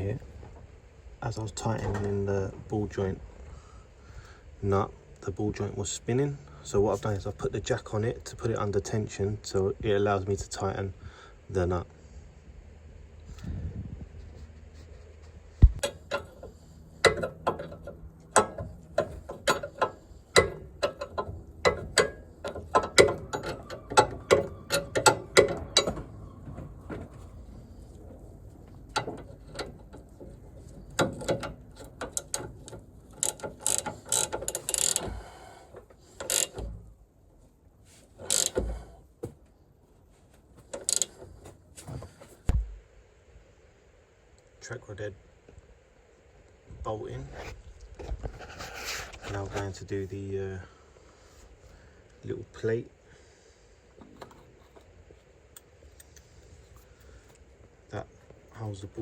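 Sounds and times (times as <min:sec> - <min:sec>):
hand ratchet clicking: 0:31.0 - 0:35.2, 0:36.2 - 0:36.6, 0:38.2 - 0:38.6, 0:40.7 - 0:41.2
short scraping sounds: 0:48.2 - 0:49.7.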